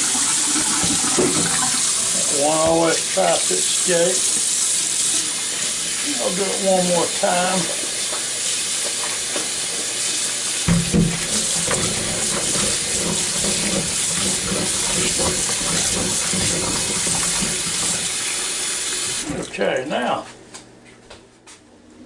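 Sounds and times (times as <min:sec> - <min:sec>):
tap water running into sink: 0:00.0 - 0:19.5
vegetables knocking in sink: 0:10.7 - 0:17.8.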